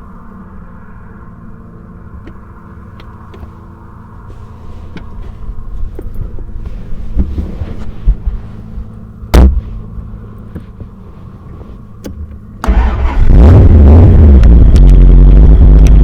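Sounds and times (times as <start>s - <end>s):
car engine idling: 1.5s - 16.0s
loud thump: 9.3s - 10.2s.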